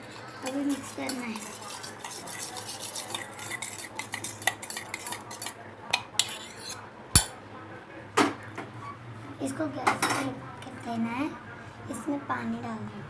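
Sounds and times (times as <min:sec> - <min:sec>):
spoon scraping metal vessel: 0:00.0 - 0:07.3.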